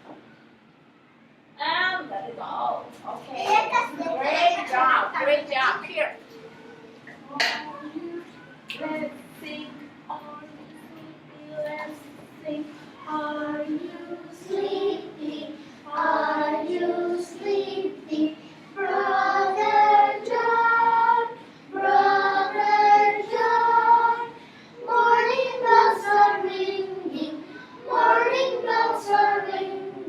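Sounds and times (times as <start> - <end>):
children singing in unison: 11.5 - 30.0.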